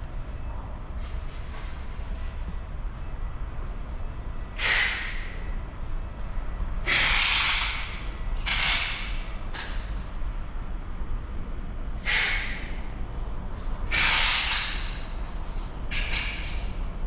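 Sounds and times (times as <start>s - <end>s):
steady low rumble: 0.0s - 6.9s, 7.8s - 14.0s.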